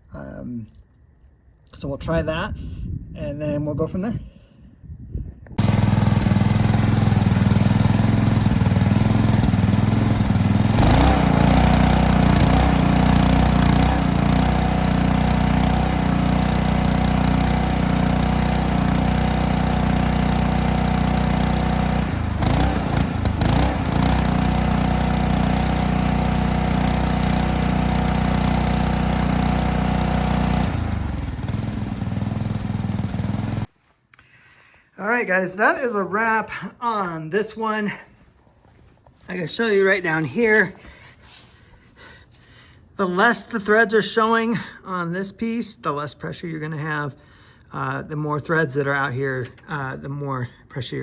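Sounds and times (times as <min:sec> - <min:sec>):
pressure washer engine humming: 0:05.6 - 0:33.7.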